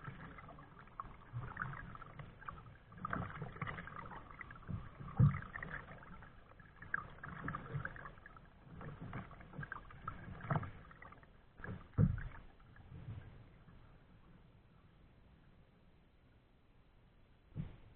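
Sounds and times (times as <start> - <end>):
paddle splashing in water: 0.0 - 13.3.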